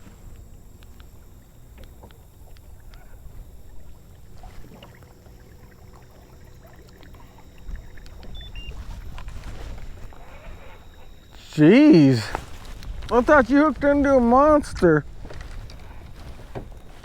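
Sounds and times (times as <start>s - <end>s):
small ticks: 0.0s - 11.5s
steady low rumble: 0.0s - 17.0s
water lapping against kayak hull: 0.0s - 17.0s.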